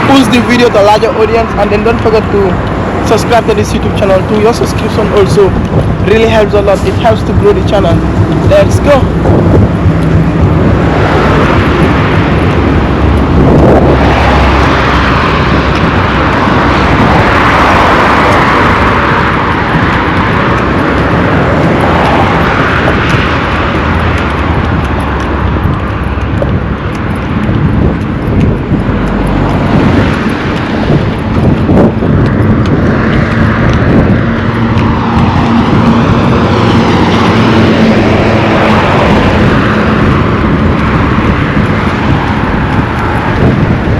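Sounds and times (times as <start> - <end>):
steady engine hum: 0.0 - 43.9
vehicles passing on busy road: 0.0 - 43.9.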